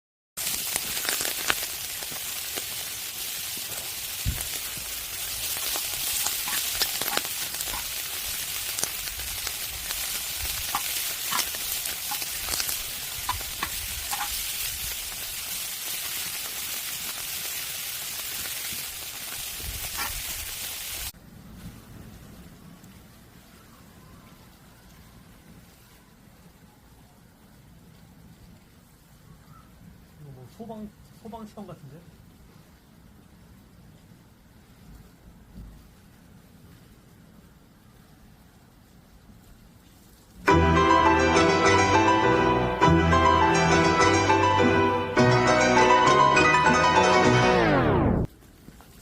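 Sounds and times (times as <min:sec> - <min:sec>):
pork sizzling and popping in fat: 0:00.4 - 0:21.2.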